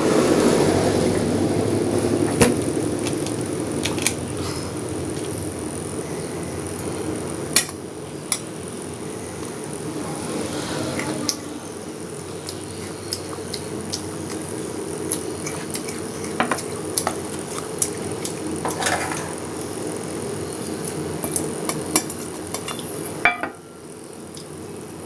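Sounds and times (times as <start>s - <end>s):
steady low hum: 0.0s - 25.0s
dishes clinking: 22.7s - 23.6s.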